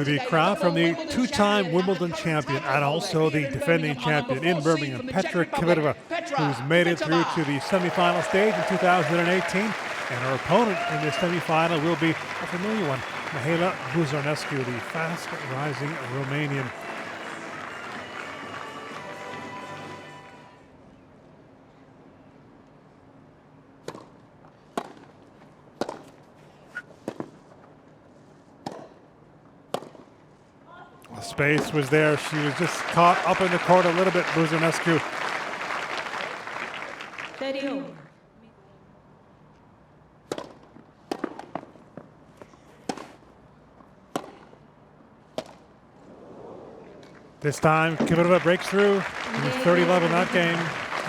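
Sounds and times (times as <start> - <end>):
tennis ball struck by racquets: 23.8 - 24.1, 24.7 - 25.1, 29.7 - 30.1, 40.2 - 41.7, 44.1 - 44.5.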